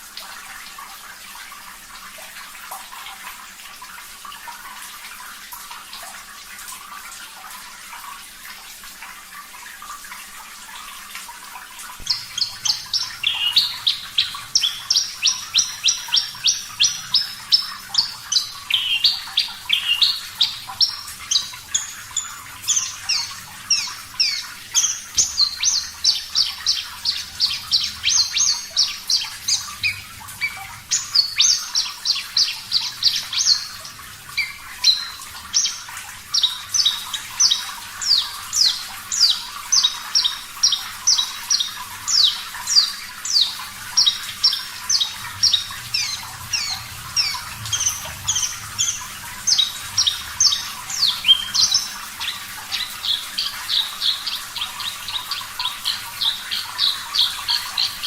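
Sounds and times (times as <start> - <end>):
running water hissing: 0.0 - 58.0
bird chirping song: 12.0 - 58.0.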